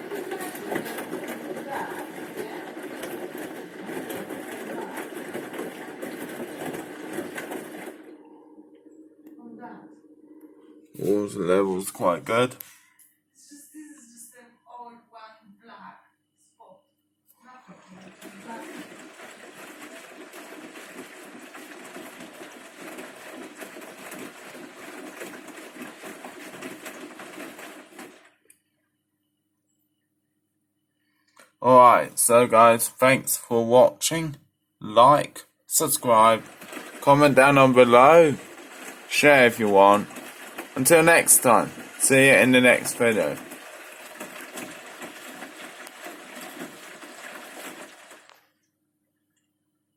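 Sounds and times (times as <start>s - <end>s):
washing machine drum churning: 0.0s - 12.6s, 17.7s - 28.5s, 31.6s - 48.5s
water sloshing: 0.0s - 12.6s, 17.8s - 28.4s, 35.7s - 48.5s
faint hum: 0.0s - 18.1s.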